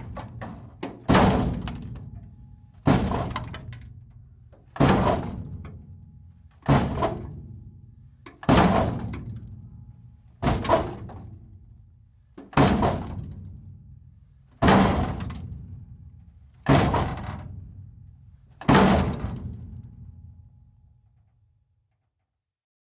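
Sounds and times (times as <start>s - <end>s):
metal machinery crunching impacts: 18.6s - 19.8s.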